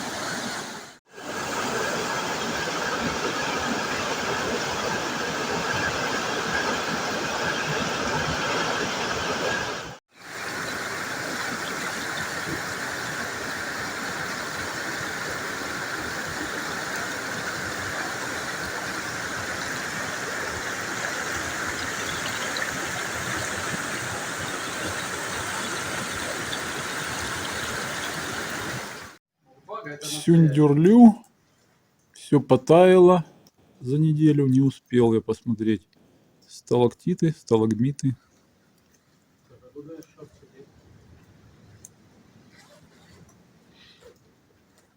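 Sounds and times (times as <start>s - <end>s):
waterfall rushing: 0.0s - 29.2s.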